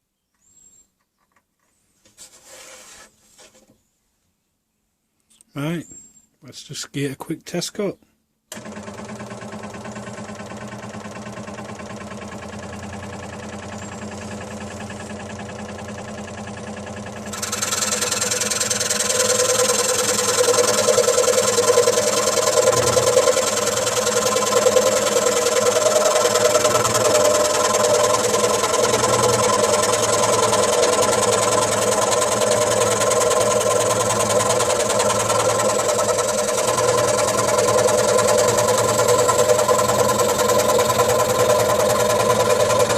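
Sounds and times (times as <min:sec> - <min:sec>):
scroll saw motor humming: 0:08.5 - 0:42.9
saw blade cutting wood: 0:17.3 - 0:42.9.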